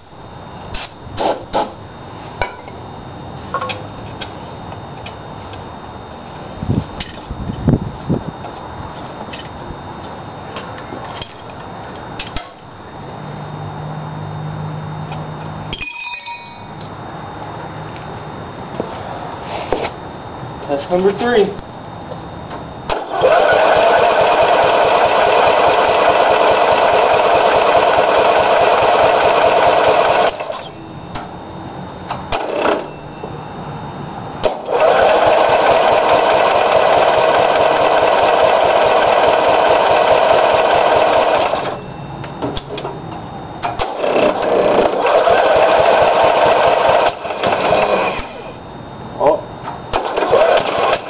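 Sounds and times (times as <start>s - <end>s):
small engine running fast: 22.9s - 30.7s, 34.6s - 41.7s, 43.9s - 48.5s, 50.0s - 51.0s.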